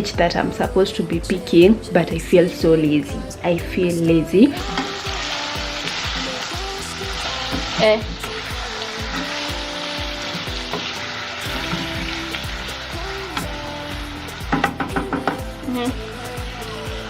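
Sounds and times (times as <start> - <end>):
background music with a beat: 0.0 - 17.0
food sizzling in a pan: 4.3 - 17.0.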